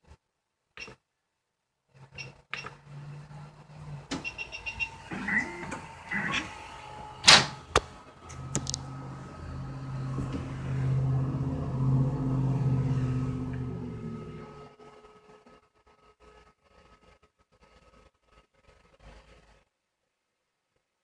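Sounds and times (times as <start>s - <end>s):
printer motor hum: 2.6s - 14.7s
printer clicks: 7.2s - 7.9s.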